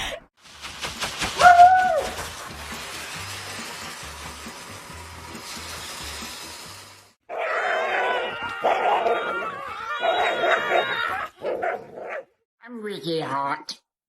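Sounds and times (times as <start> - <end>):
dog whining howls: 7.3 - 11.3.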